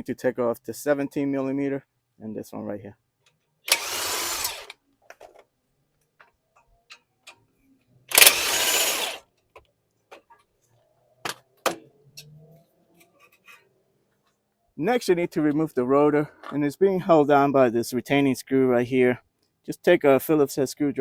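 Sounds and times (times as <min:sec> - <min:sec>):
power tool spinning bolts: 0:03.7 - 0:04.8, 0:08.1 - 0:09.2
sharp metallic clicks: 0:08.1 - 0:09.1.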